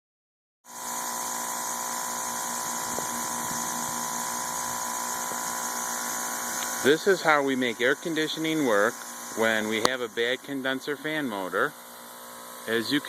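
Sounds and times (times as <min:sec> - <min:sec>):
hiss: 0:00.7 - 0:09.8
air conditioner compressor humming: 0:00.7 - 0:13.0.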